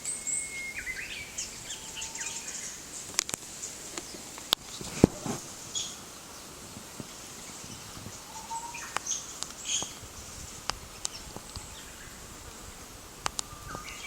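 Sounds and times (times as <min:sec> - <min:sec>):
bird whistling and chirping: 0:00.0 - 0:02.8, 0:08.3 - 0:09.8, 0:13.4 - 0:14.0
high insect hum: 0:00.0 - 0:14.0.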